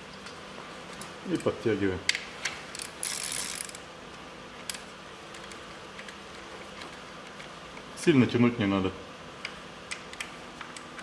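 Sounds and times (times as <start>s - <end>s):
ratchet wrench clicking: 2.7s - 3.8s.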